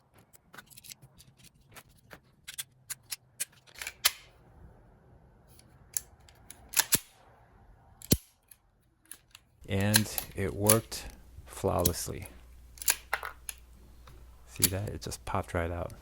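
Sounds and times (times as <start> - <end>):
pistol action metallic clicks: 2.5 - 4.3, 5.9 - 7.2, 8.0 - 11.2, 12.8 - 13.7.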